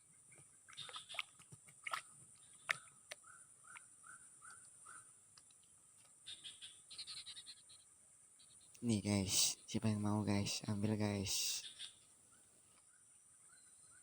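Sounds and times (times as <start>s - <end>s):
animal chirping: 6.3s - 7.8s.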